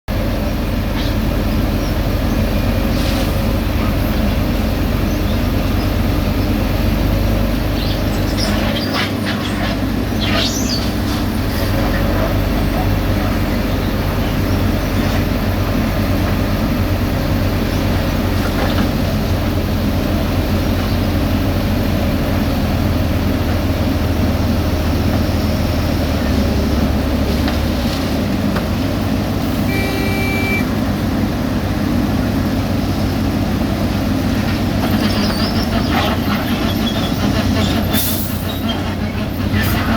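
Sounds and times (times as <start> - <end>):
heavy diesel machinery running: 0.1 - 39.9
brief high squeaks: 29.7 - 30.7.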